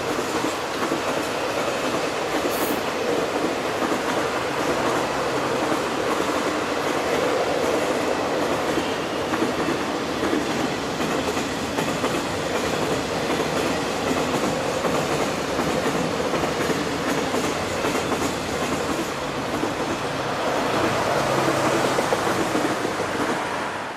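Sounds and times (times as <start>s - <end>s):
wheels clacking over rail joints: 0.0s - 23.5s
freight train rumble: 0.0s - 23.9s.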